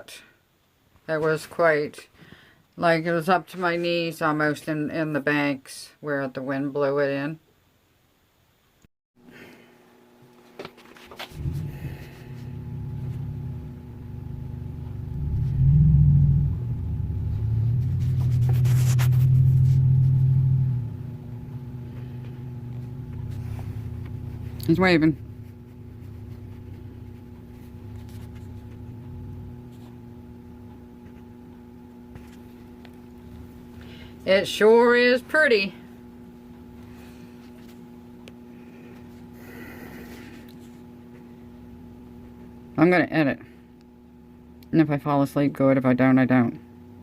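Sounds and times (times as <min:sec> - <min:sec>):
truck engine rumble: 0:11.3 - 0:34.3.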